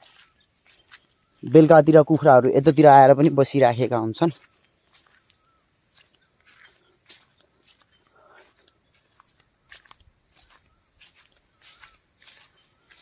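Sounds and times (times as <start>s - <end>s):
insects chirring: 0.0s - 13.0s
soft clicks like footsteps: 4.4s - 13.0s.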